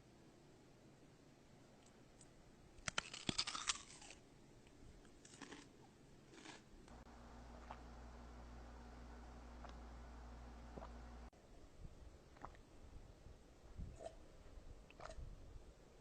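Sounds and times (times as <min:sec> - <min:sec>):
crisp food crunching: 0:02.8 - 0:04.2, 0:05.2 - 0:06.7
chewing: 0:05.2 - 0:05.7.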